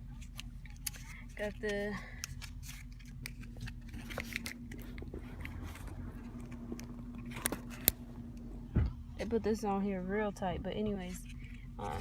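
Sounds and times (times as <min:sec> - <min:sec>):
faint steady hum: 0:00.0 - 0:12.0
packaging crinkling and rustling: 0:00.1 - 0:08.0.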